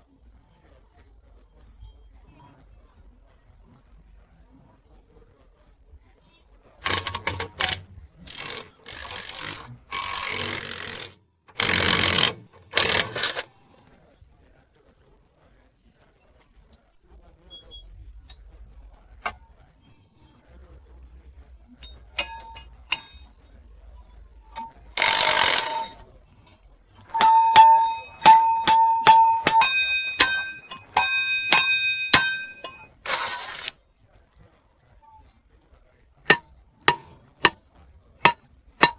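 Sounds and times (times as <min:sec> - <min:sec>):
light metal clinks: 0:17.5 - 0:18.4, 0:27.0 - 0:33.0
hammer blows on steel: 0:27.0 - 0:33.2, 0:36.3 - 0:38.9.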